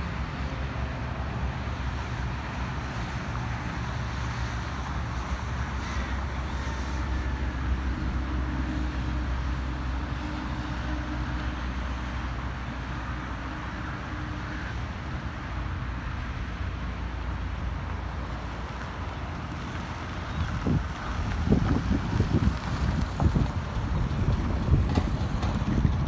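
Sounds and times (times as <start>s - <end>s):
passing vehicle engine hum: 0.0s - 26.0s
road traffic rumble: 0.0s - 26.0s
wind on microphone: 19.6s - 26.0s.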